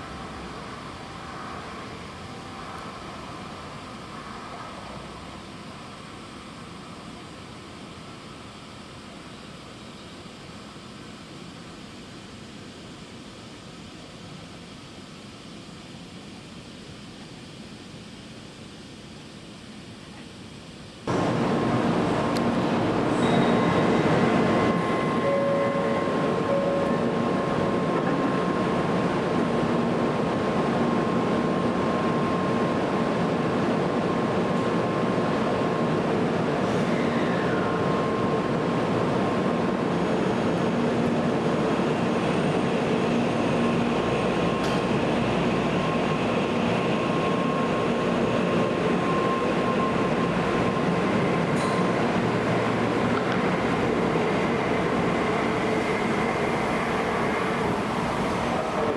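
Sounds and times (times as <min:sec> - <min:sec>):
faint steady whining tones: 0:21.1 - 0:58.9
train rushing: 0:21.1 - 0:58.9.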